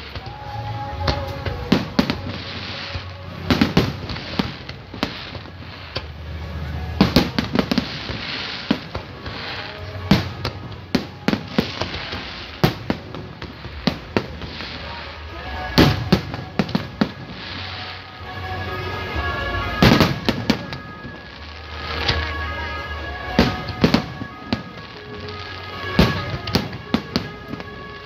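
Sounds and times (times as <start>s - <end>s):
crackling hiss of fireworks: 0.0s - 28.0s
fireworks bangs: 0.0s - 28.0s.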